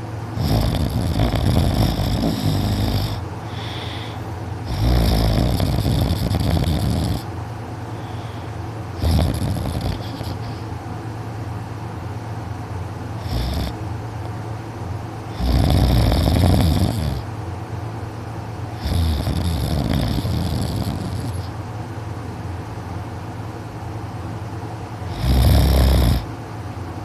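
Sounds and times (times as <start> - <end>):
boy snoring heavily: 0.4 - 7.3, 8.0 - 10.6, 13.2 - 13.8, 15.3 - 17.3, 18.8 - 21.5, 25.0 - 26.3.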